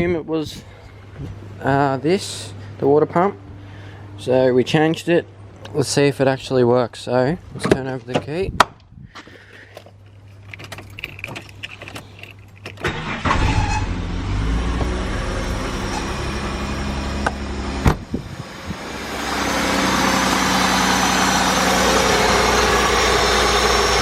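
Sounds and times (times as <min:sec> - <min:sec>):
starter motor cranking: 0:10.9 - 0:13.6
car engine idling: 0:12.9 - 0:24.0.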